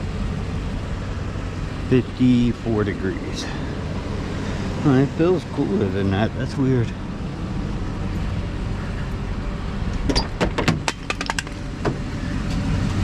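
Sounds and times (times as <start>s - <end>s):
vehicle engine humming: 0.0s - 13.0s
sharp clicks or rattles: 9.9s - 11.6s.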